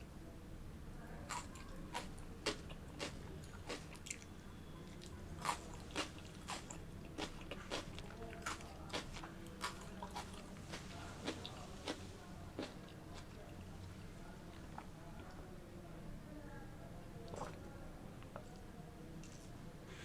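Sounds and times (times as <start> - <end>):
chewing crisp bread crust: 1.2 - 15.4.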